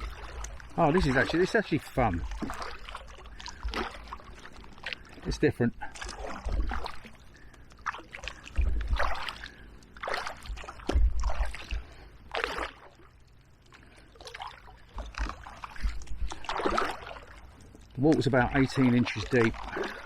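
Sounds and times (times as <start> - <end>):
paddle splashing in river water: 0.0 - 20.0
dull low rumbles: 8.3 - 9.8, 10.4 - 12.3.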